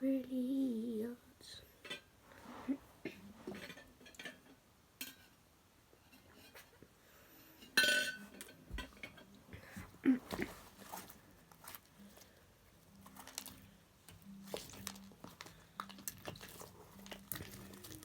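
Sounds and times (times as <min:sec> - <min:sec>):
small hard objects clicking: 0:13.0 - 0:18.0.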